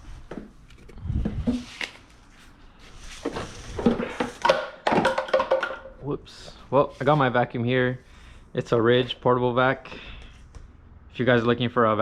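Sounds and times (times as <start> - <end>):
hard objects knocking and clattering: 3.7 - 6.0.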